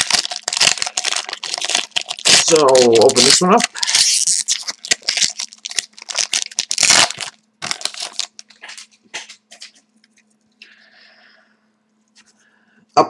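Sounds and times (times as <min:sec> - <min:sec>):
wrapper tearing and crinkling: 0:00.0 - 0:09.7.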